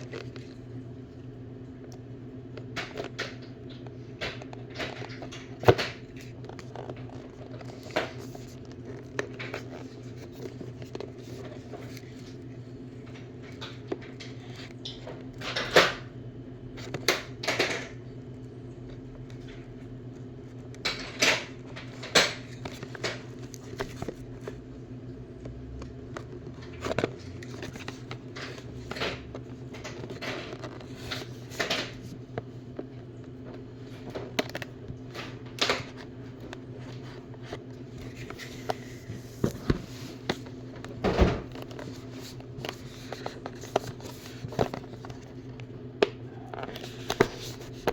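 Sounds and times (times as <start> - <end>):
steady low hum: 0.0 - 47.9
plastic case clicks and rustles: 25.8 - 47.9.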